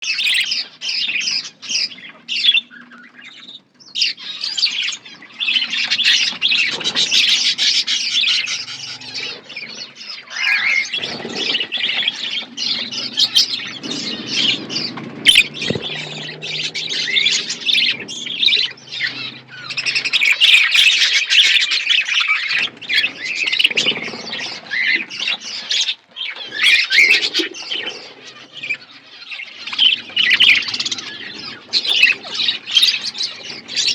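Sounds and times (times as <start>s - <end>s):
budgerigars chattering and chirping: 0.0s - 33.9s.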